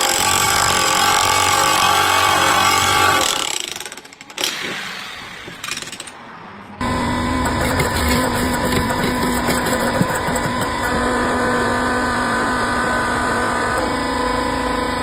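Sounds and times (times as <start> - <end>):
electric motor hum: 6.8 - 15.0.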